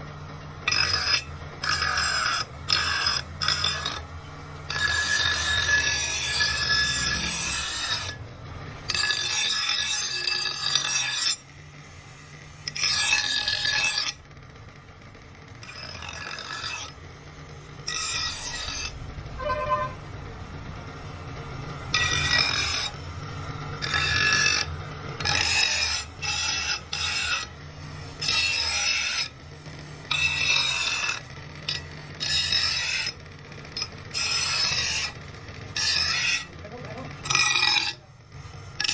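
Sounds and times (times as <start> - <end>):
abrasive tool rasping on blade: 0.7 - 14.2, 15.6 - 20.6, 21.4 - 29.4, 30.0 - 38.0.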